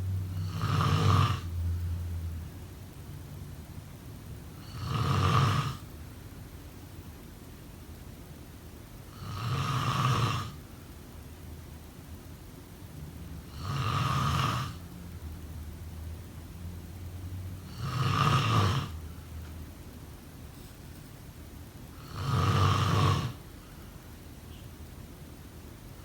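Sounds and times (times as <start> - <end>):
faint steady hum: 0.0 - 26.0
person snoring: 0.3 - 1.5, 4.6 - 5.8, 9.2 - 10.6, 13.5 - 14.8, 17.7 - 19.0, 22.0 - 23.4.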